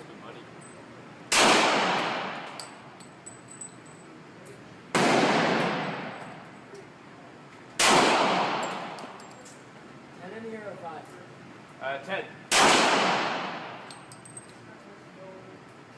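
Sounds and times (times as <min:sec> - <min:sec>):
pistol shots: 0:01.3 - 0:02.6, 0:04.9 - 0:06.2, 0:07.8 - 0:09.2, 0:12.5 - 0:13.8.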